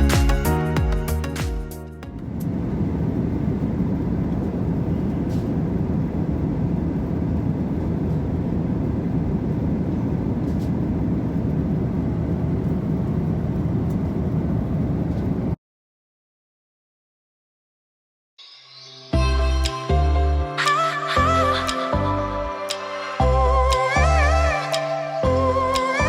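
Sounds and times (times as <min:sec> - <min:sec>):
airliner cabin engine rumble: 0:02.0 - 0:15.6.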